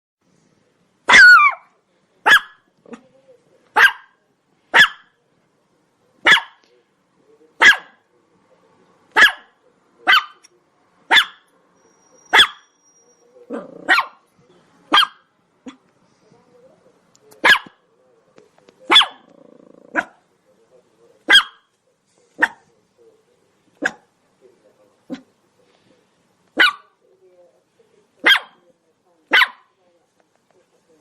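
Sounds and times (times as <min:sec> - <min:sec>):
dog barking: 0:01.1 - 0:03.0, 0:03.8 - 0:05.2, 0:06.2 - 0:06.6, 0:07.6 - 0:08.0, 0:09.1 - 0:10.5, 0:11.1 - 0:11.5, 0:12.3 - 0:12.7, 0:13.5 - 0:14.2, 0:14.9 - 0:15.8, 0:17.4 - 0:17.8, 0:18.9 - 0:19.3, 0:19.9 - 0:20.2, 0:21.3 - 0:21.7, 0:22.4 - 0:22.7, 0:23.8 - 0:24.1, 0:26.6 - 0:27.0, 0:28.2 - 0:28.6, 0:29.3 - 0:29.7.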